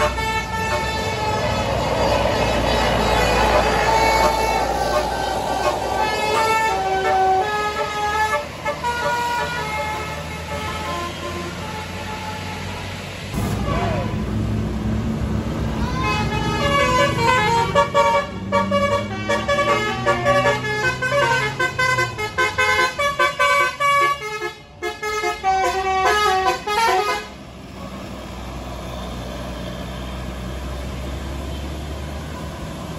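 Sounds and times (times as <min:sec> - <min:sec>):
multi-tone bus horn tune: 0:00.0 - 0:14.2, 0:15.9 - 0:27.4
low engine rumble: 0:00.0 - 0:18.3.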